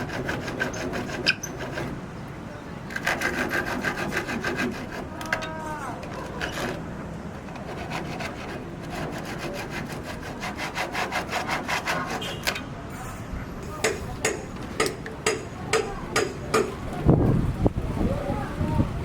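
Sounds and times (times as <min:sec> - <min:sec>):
scraping wood by hand: 0:00.0 - 0:02.0, 0:02.9 - 0:12.6.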